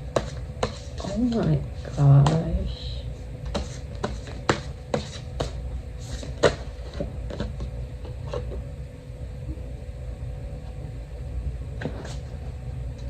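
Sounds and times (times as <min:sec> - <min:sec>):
low hum: 0:05.3 - 0:13.0.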